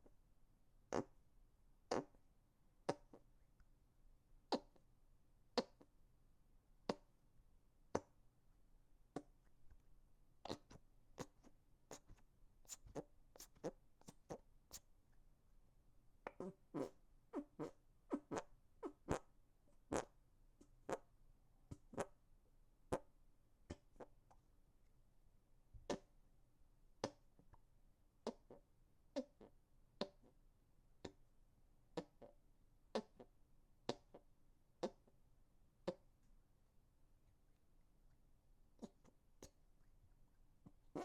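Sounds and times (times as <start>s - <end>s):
hand fart pops: 1.9s - 2.2s, 2.9s - 3.2s, 6.9s - 7.1s, 16.3s - 19.2s, 25.8s - 26.1s, 27.0s - 27.2s, 33.9s - 34.2s, 34.8s - 35.1s.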